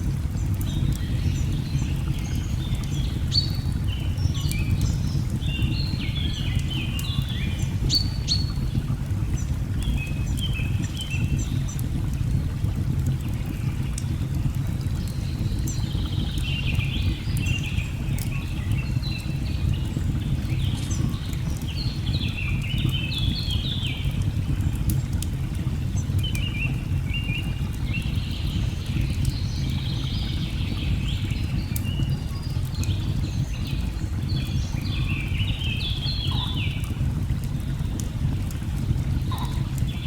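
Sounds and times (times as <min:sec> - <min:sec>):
wood fire crackling: 0:00.0 - 0:40.0
birds chirping and trilling: 0:34.4 - 0:36.8, 0:39.2 - 0:40.0.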